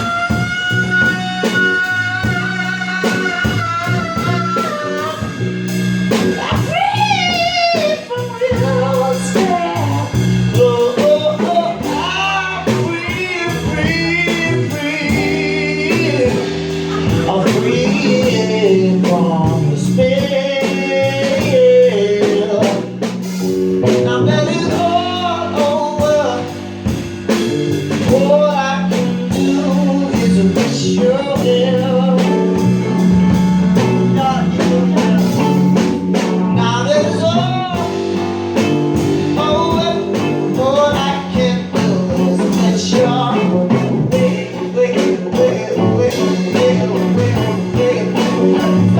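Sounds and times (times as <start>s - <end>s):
lead guitar solo: 0.0s - 8.2s
bass guitar: 0.0s - 48.9s
drum kit: 0.0s - 48.9s.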